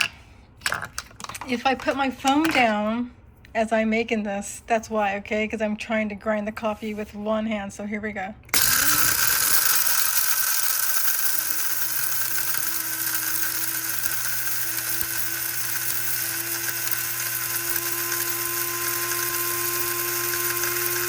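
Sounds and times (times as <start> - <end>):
coffee grinder whining: 8.6 - 21.0.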